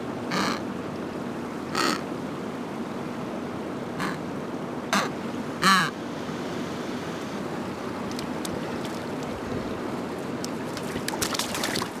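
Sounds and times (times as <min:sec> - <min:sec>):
wind: 0:00.0 - 0:12.0
surf: 0:05.1 - 0:12.0.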